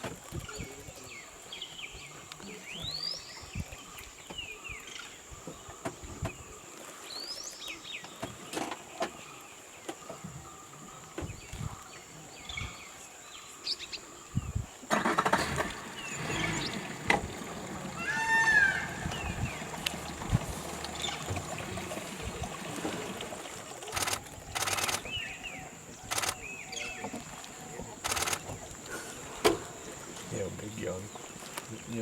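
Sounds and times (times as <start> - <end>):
water rushing along boat: 14.9 - 32.0
birds whistling: 15.7 - 21.6.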